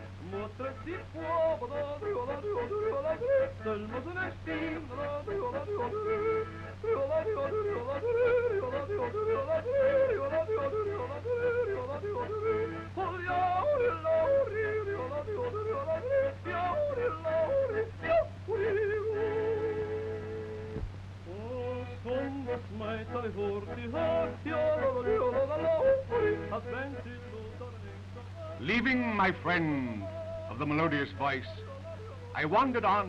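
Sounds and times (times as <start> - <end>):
low film track hum: 0.0 - 33.0
person yodeling: 4.6 - 20.4.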